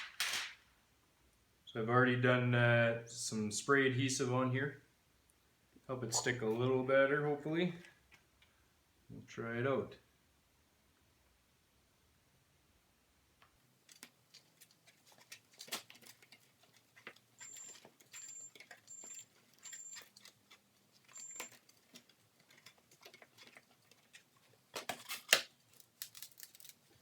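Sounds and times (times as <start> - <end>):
crackling rustle of paper: 13.8 - 27.0
short high squeaks: 17.4 - 20.4, 21.0 - 21.7.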